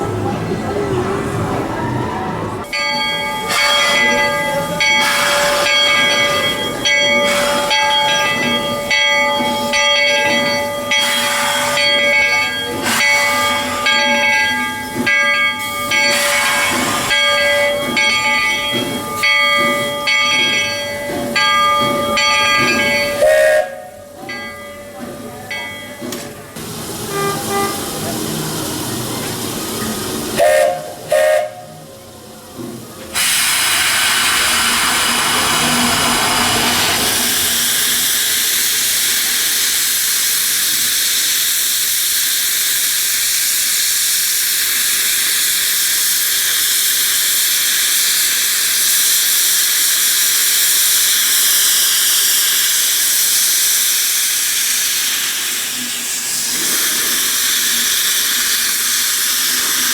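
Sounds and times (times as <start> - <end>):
steam hissing: 2.4 - 24.0, 25.5 - 59.9
steam whistle toots: 23.1 - 24.0, 27.0 - 28.2, 30.4 - 31.9.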